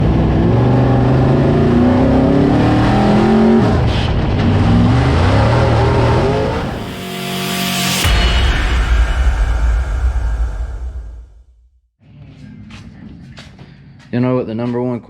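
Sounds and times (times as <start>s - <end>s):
race car engine accelerating: 0.0s - 8.1s.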